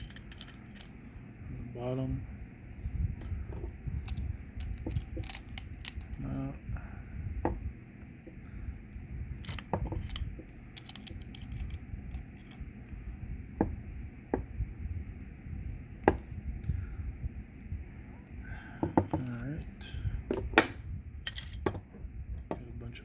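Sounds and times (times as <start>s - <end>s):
metallic clicks and clinks: 0.0s - 0.9s, 4.0s - 6.5s, 9.4s - 12.6s, 21.3s - 21.8s
handling noise: 0.0s - 1.0s, 3.5s - 6.5s, 9.4s - 12.6s, 18.8s - 22.0s.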